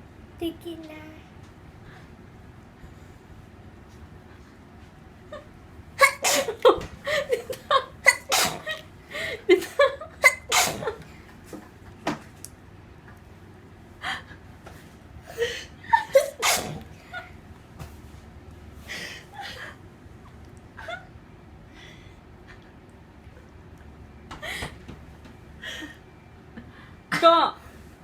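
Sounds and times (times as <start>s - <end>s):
person sneezing: 6.0s - 6.6s, 8.1s - 8.7s, 10.2s - 11.0s, 16.1s - 16.9s.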